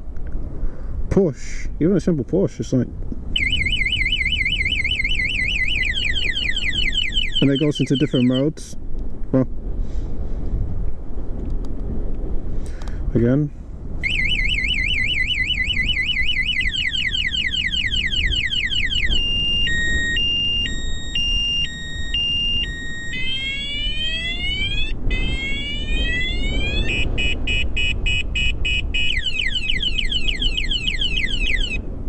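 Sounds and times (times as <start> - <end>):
motorcycle alarm siren: 3.4 - 8.5, 14.0 - 31.9.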